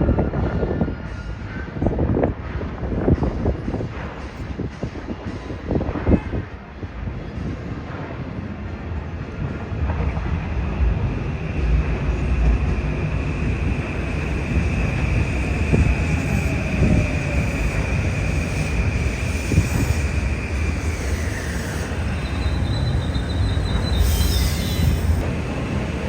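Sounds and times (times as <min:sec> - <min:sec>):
electric train passing: 0:00.0 - 0:26.0
high train whine: 0:00.0 - 0:26.0.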